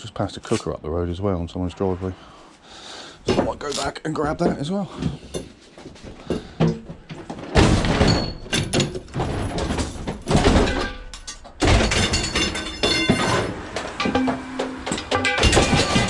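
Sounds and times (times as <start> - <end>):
sheet metal thuds and clanks: 6.4 - 16.0.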